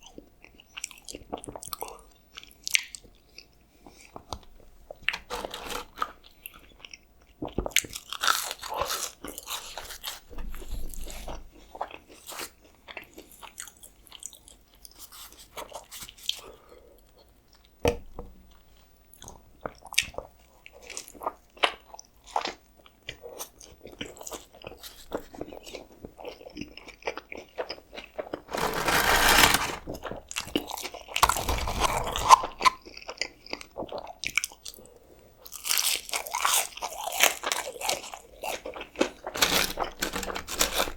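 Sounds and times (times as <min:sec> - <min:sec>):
biting and chewing food: 0:05.1 - 0:06.2, 0:31.2 - 0:33.3, 0:38.4 - 0:40.9.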